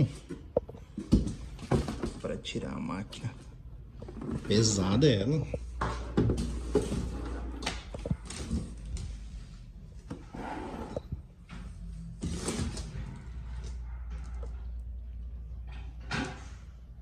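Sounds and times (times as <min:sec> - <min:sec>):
cardboard scraping and rustling: 0:05.8 - 0:13.8.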